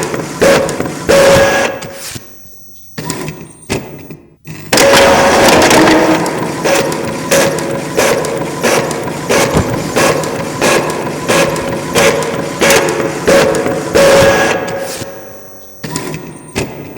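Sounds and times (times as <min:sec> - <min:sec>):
inkjet printer carriage shuttling: 0:05.6 - 0:13.9.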